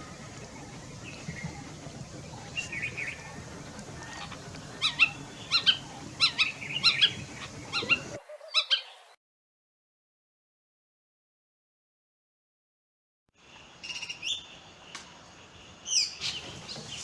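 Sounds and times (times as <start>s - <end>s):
faint background birdsong: 0.0s - 9.2s, 13.4s - 17.0s.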